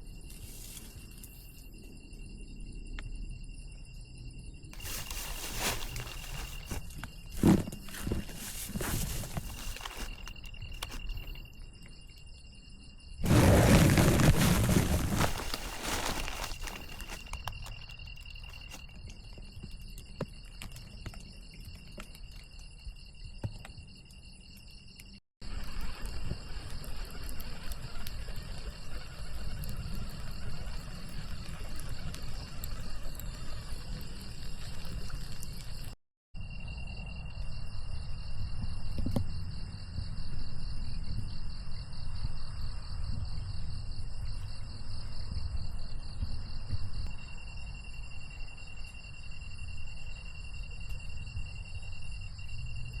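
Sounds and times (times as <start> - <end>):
insects trilling: 0.0 - 53.0.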